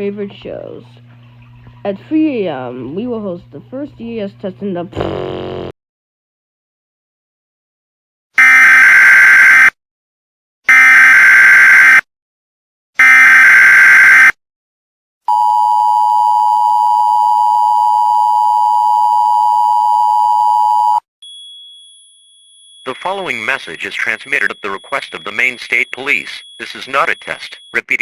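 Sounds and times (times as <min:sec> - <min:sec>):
harsh buzzing data warble: 0:22.9 - 0:28.0
two-tone attention signal: 0:22.9 - 0:28.0.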